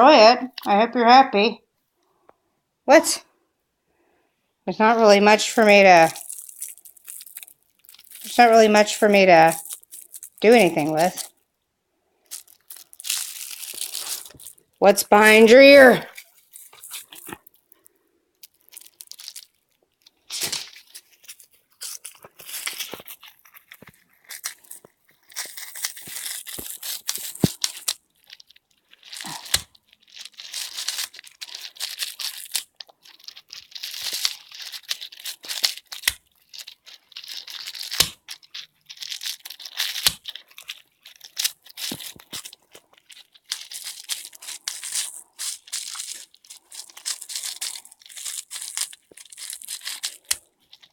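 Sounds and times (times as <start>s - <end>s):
pet tearing a toy: 5.4s - 11.3s, 12.3s - 17.6s, 18.4s - 19.5s, 20.2s - 50.9s.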